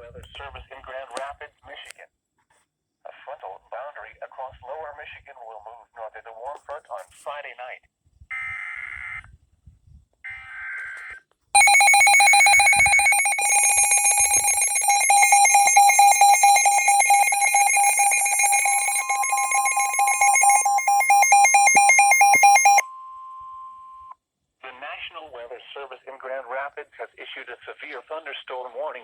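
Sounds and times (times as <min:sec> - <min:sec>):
digital alert header bursts: 0:11.6 - 0:22.8
rapidly pulsing electronic beeping: 0:11.6 - 0:22.8
steady warning tone: 0:11.6 - 0:22.8.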